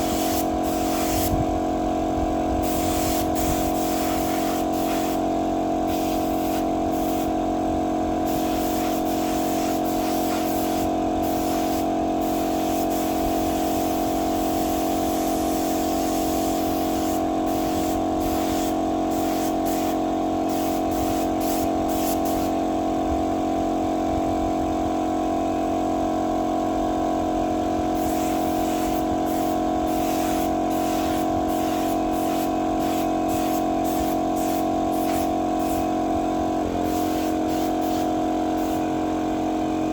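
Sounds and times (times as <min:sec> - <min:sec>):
spray gun hissing: 0:00.0 - 0:01.4, 0:02.6 - 0:07.4, 0:08.2 - 0:22.6, 0:28.0 - 0:36.0, 0:36.8 - 0:38.9
air compressor motor hum: 0:00.0 - 0:39.9.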